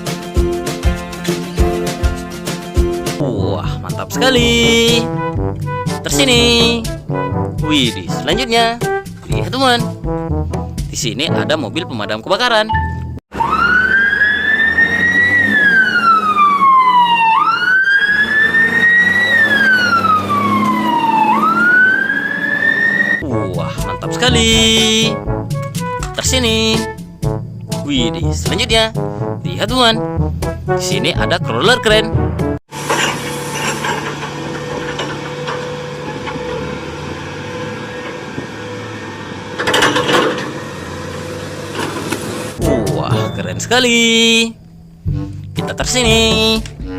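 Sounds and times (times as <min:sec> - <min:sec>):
fire truck siren wailing: 0:13.3 - 0:23.9, 0:32.7 - 0:42.9.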